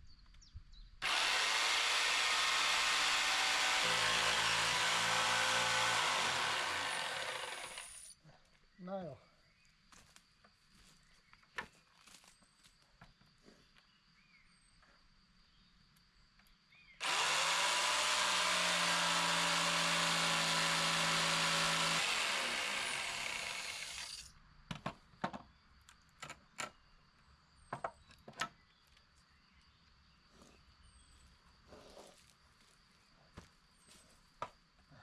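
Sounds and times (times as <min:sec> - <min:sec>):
electric power tool running: 0:01.0 - 0:08.1, 0:17.0 - 0:24.3.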